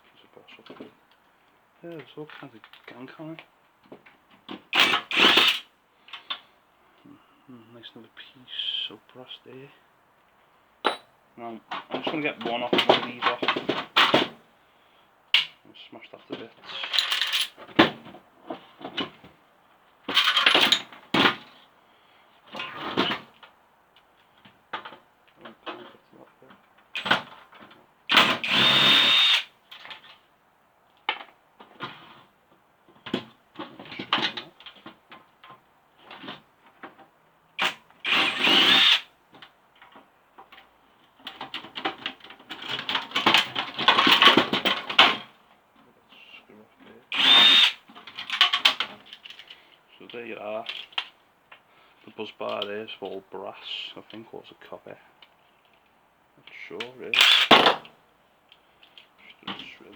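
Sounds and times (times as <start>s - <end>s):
impact driver whining: 4.8s - 5.6s, 28.2s - 29.5s, 37.6s - 39.1s, 47.1s - 47.8s, 57.2s - 57.8s
metal and plastic parts clattering: 16.5s - 18.2s, 20.1s - 21.4s, 41.3s - 45.3s, 47.9s - 49.6s, 57.2s - 57.9s.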